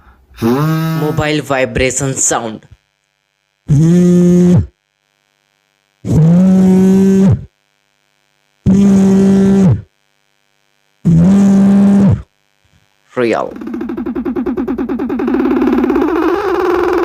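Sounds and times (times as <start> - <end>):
vocal imitation of phone vibrating: 0.0 - 1.4, 3.6 - 4.8, 6.0 - 7.6, 8.6 - 10.0, 11.0 - 12.4, 13.1 - 17.0.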